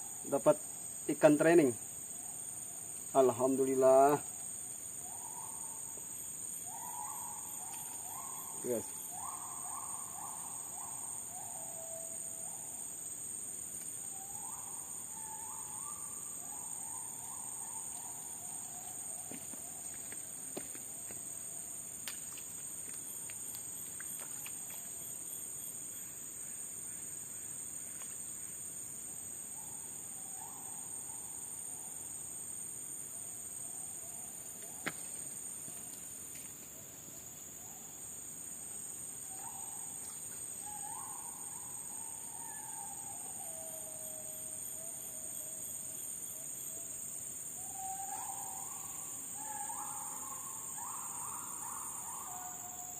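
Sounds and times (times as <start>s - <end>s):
insects droning: 0.0s - 52.9s.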